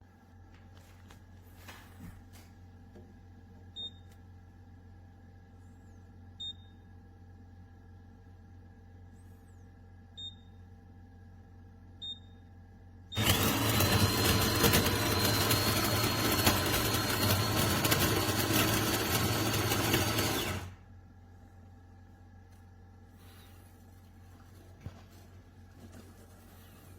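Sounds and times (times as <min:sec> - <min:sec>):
espresso machine beeping: 0:13.1 - 0:20.8
espresso machine whining: 0:13.2 - 0:20.9.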